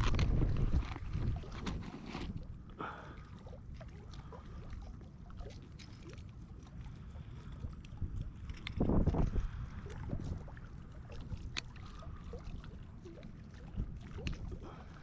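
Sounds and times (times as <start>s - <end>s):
faint clicks and rustles: 0.0s - 2.6s
wind rumble on microphone: 0.0s - 2.7s, 5.8s - 15.0s.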